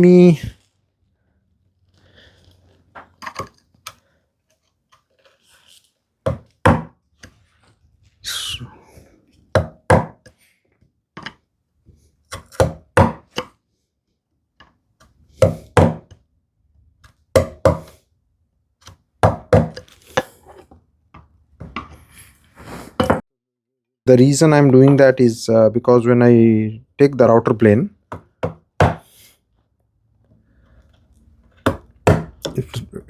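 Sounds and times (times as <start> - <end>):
short scrape: 22.2 - 23.1
chisel struck into wood: 28.1 - 29.0, 31.7 - 32.6.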